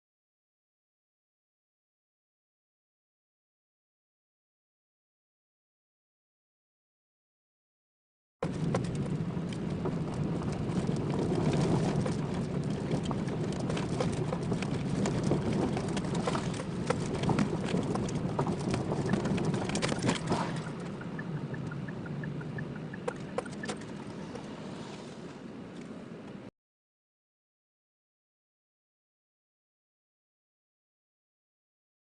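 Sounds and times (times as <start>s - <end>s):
tyre and body rattles: 8.4s - 21.0s
car engine and road noise: 8.4s - 26.5s.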